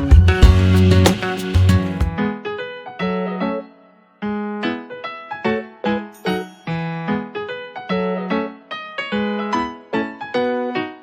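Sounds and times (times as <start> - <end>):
bass notes: 0.0 - 2.2
strummed acoustic guitar: 0.0 - 2.2.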